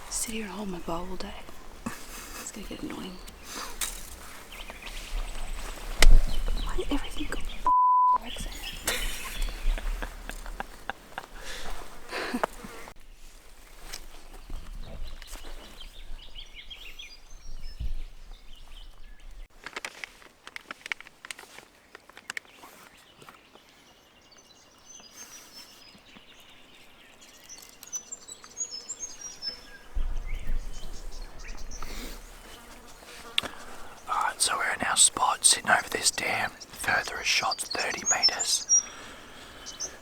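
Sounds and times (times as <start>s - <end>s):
birds chirping: 0.0s - 13.0s, 14.2s - 19.5s, 21.5s - 40.0s
insects humming: 0.0s - 13.0s, 26.6s - 40.0s.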